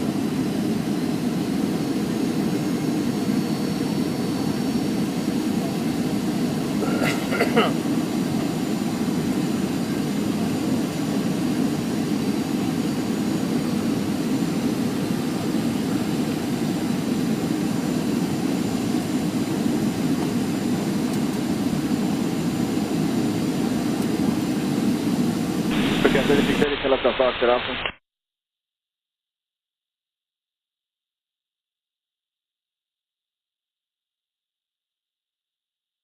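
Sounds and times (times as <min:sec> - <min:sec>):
jet engine cabin rumble: 0:00.0 - 0:27.6
faint high whine: 0:24.6 - 0:27.9.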